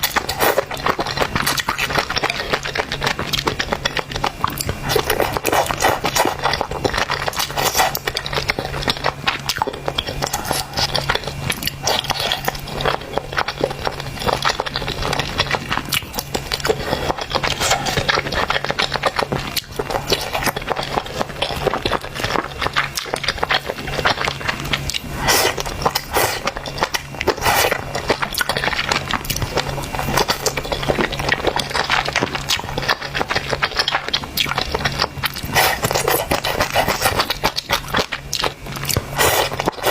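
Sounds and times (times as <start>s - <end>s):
chewing and slurping noodles: 0.0s - 39.9s
steady low hum: 0.0s - 39.9s.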